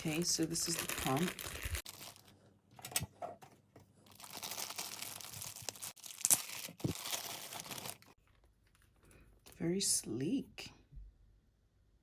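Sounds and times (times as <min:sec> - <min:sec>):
plastic packaging crinkling and tearing: 0:00.0 - 0:03.1, 0:04.0 - 0:08.9.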